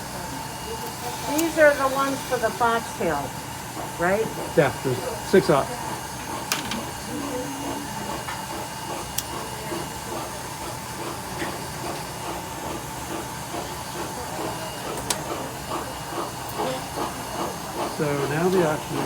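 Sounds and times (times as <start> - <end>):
gas torch hissing: 0.8 - 5.7.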